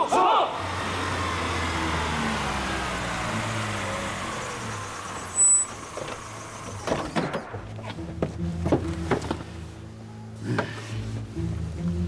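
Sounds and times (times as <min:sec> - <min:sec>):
vehicle engine running: 0:00.4 - 0:09.9
high-pitched squeal: 0:00.5 - 0:07.5.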